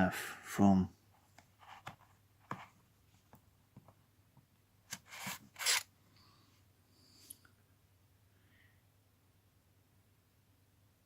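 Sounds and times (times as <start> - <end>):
short scraping noises: 4.9 - 5.9.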